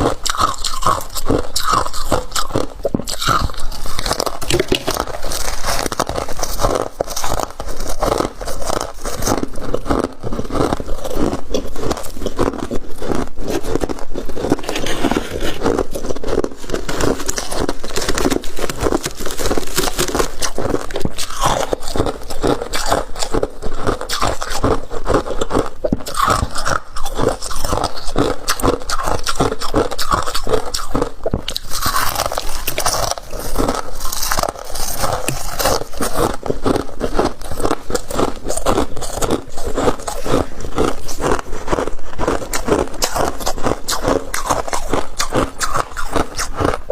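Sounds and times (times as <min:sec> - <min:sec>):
crunching and chewing frost: 0:00.0 - 0:46.9
frost being scraped: 0:00.4 - 0:09.4, 0:13.5 - 0:22.0, 0:30.7 - 0:36.5.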